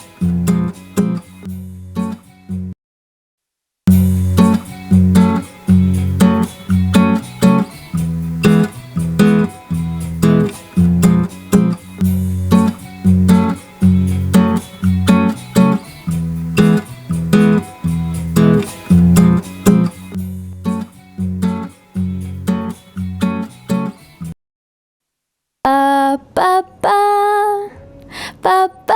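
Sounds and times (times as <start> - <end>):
acoustic guitar strumming: 0.0 - 2.2, 3.9 - 24.3.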